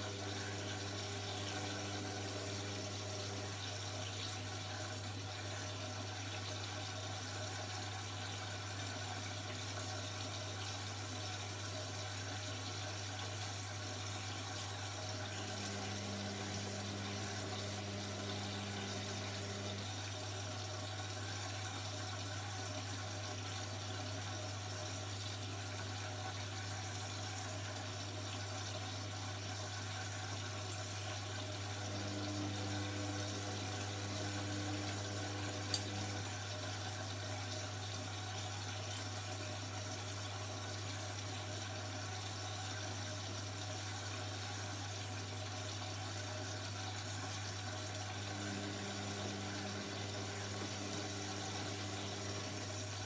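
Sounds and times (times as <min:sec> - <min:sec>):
water running in washing machine: 0:00.0 - 0:53.0
low electrical hum: 0:14.3 - 0:20.2, 0:46.6 - 0:53.0.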